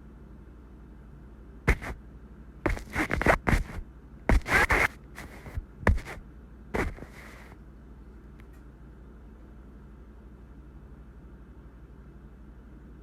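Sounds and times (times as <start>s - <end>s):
faint steady hum: 0.0s - 13.0s
scratchy distorted bursts: 1.7s - 2.0s, 2.7s - 6.2s, 6.8s - 7.6s.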